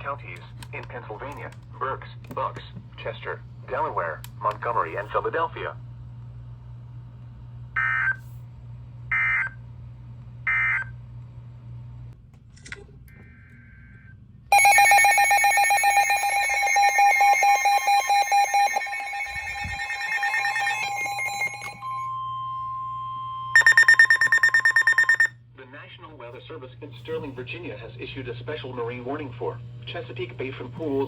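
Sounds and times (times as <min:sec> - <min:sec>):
low hum: 0:13.1 - 0:25.3
pulsing electronic alert: 0:14.5 - 0:22.2, 0:23.6 - 0:25.3
steady alarm tone: 0:14.5 - 0:25.3
digital data bursts: 0:23.6 - 0:25.3.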